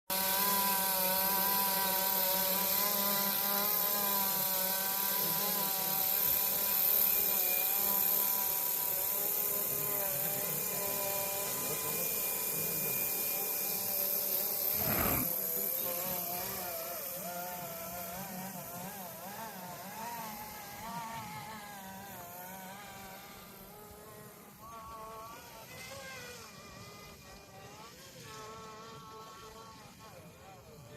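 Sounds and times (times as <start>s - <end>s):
rc helicopter motor whine: 0.1s - 30.9s
short rush of noise: 14.7s - 15.3s.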